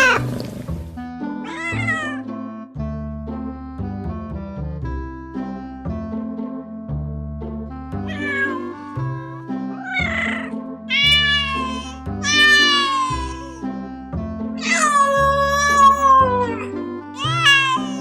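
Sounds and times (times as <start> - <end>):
background music: 0.0 - 18.0
cat meowing: 1.4 - 2.2, 8.1 - 8.8, 9.8 - 13.6, 14.6 - 18.0.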